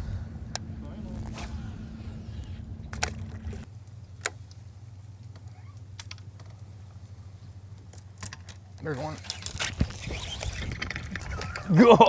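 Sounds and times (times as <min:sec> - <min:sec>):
boat motor humming: 0:00.0 - 0:08.7.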